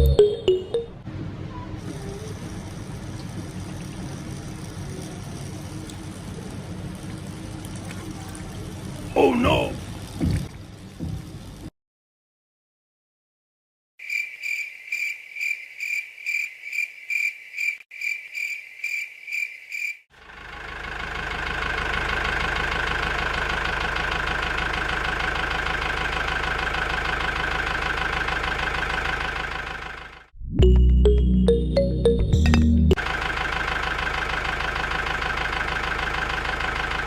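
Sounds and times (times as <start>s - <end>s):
high evenly spaced beeps: 0.0s - 1.0s
small motor humming: 1.8s - 9.0s.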